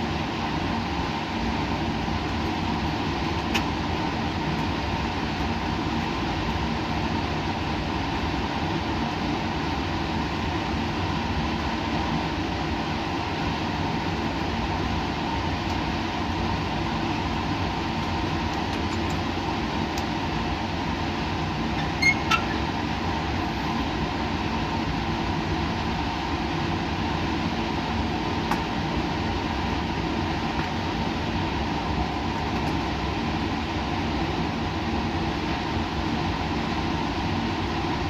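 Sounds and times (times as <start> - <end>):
machinery hum and air rush: 0.0 - 38.0.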